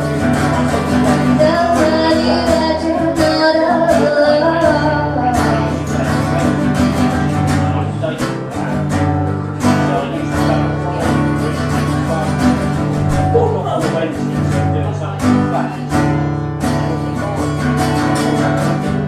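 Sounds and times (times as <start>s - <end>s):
acoustic guitar strumming: 0.0s - 19.0s
sustained low notes: 12.8s - 15.2s.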